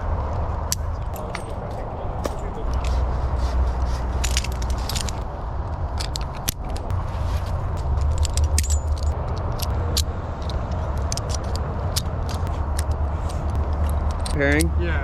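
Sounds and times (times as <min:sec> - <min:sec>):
low engine rumble: 0:00.0 - 0:15.0
metal climbing hardware jingling: 0:04.1 - 0:05.2, 0:05.9 - 0:14.7.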